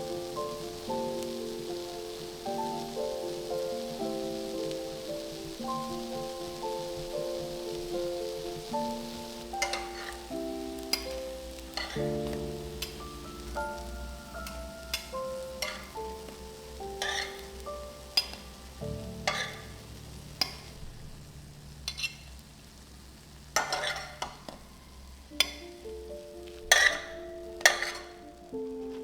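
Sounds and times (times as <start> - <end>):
frying sizzle: 0.0 - 29.0
soft background music: 0.0 - 29.0
utensil scraping a pan: 9.0 - 13.0, 14.4 - 19.8, 21.8 - 22.4, 23.6 - 24.7, 26.7 - 28.2.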